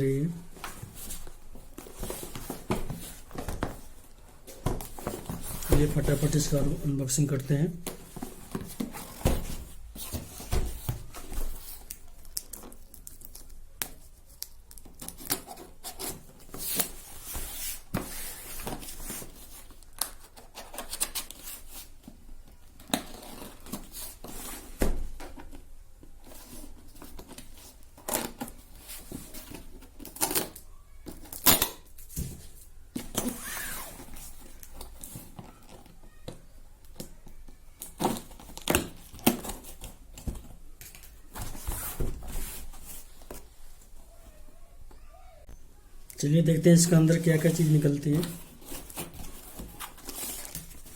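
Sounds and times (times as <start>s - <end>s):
packaging tearing and crinkling: 11.6s - 17.1s, 48.1s - 50.9s.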